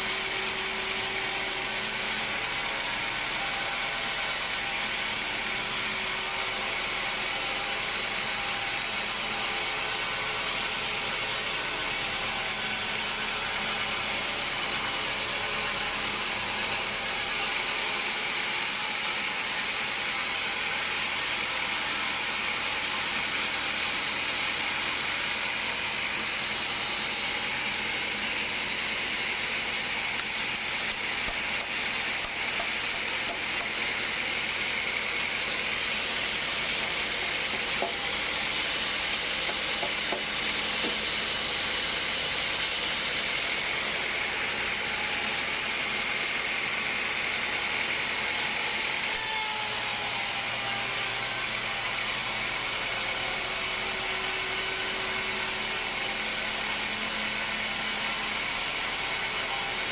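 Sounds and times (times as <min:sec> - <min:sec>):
sawmill machinery hissing: 0:00.0 - 0:59.9.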